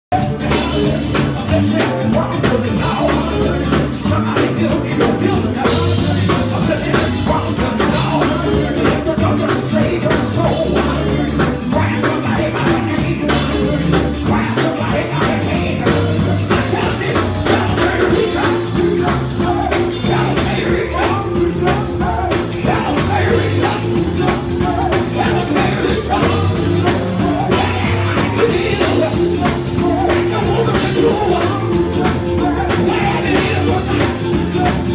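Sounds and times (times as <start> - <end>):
loud rock music: 0.1 - 34.9.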